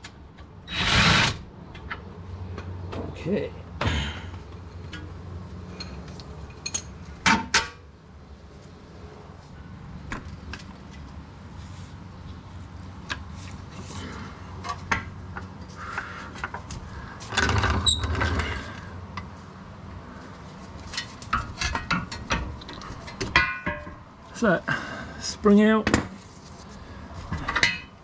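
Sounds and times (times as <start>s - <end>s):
metal tools clinking and knocking: 5.7s - 7.0s.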